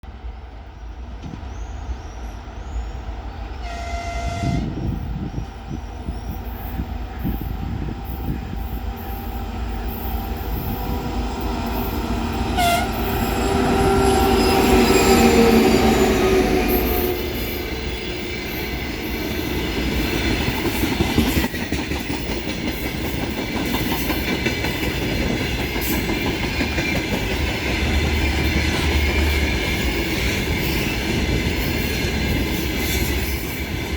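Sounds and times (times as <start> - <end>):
diesel locomotive engines: 0.1 - 33.9
locomotive horn: 3.6 - 5.0, 10.6 - 18.2.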